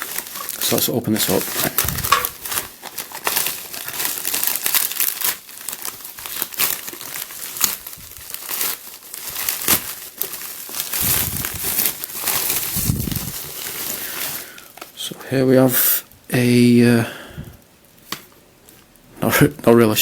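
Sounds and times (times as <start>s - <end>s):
packaging tearing: 0.0s - 14.9s
packaging crinkling and rustling: 0.0s - 15.1s.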